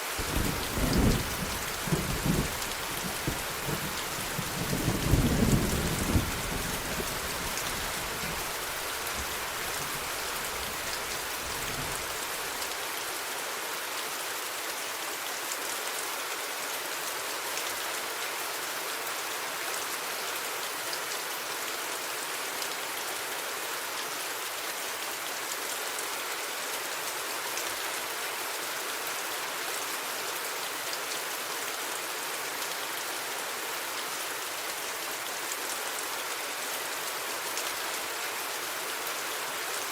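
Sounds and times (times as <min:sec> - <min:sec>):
steady rain falling: 0:00.0 - 0:39.9
thunderclap with low rumble: 0:00.2 - 0:12.2.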